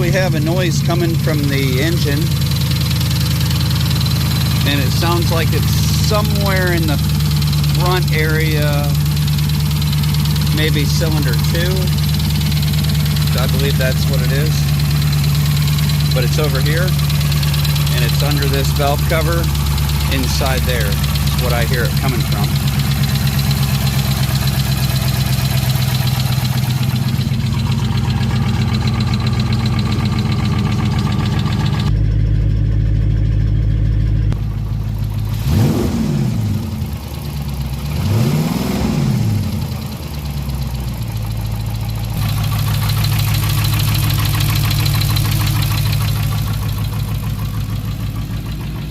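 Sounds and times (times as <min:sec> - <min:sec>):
engine revving: 0:00.0 - 0:32.0, 0:34.0 - 0:48.9
car engine knocking: 0:00.0 - 0:48.9.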